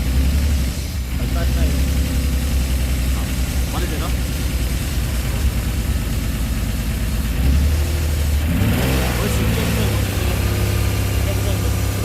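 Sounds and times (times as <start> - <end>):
car engine running with misfire: 0.0 - 12.0.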